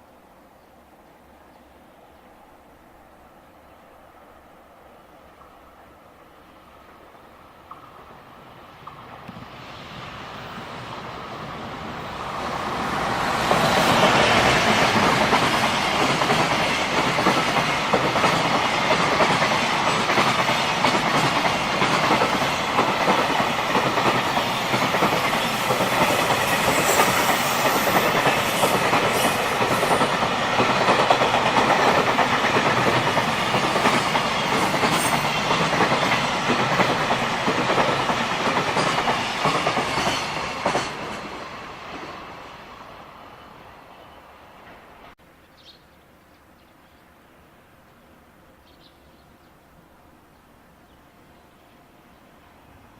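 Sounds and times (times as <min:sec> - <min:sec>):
freight train wheels on rails: 0:04.1 - 0:45.2.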